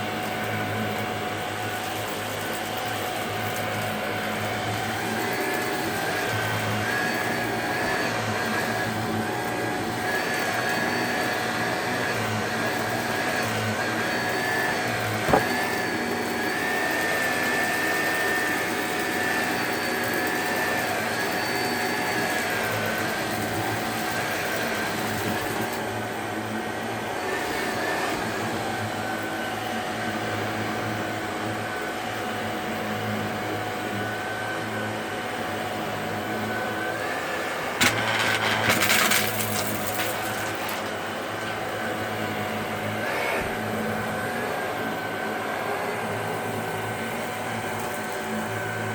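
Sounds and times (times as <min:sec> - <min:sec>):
vacuum cleaner motor whine: 0:00.0 - 0:48.9.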